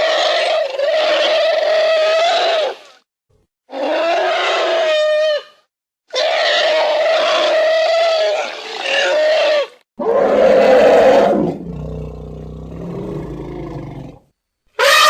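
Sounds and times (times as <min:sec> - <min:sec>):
loud bellowing animal calls: 0:03.7 - 0:14.2, 0:14.8 - 0:15.0.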